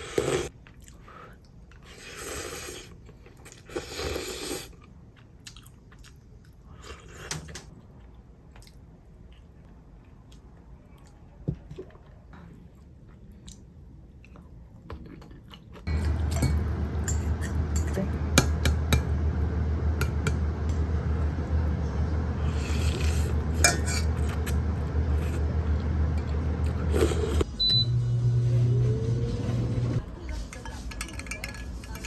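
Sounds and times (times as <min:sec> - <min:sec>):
higher hum: 0:15.9 - 0:30.1
low appliance hum: 0:15.9 - 0:32.0
dishes and cutlery clinking: 0:30.3 - 0:32.0.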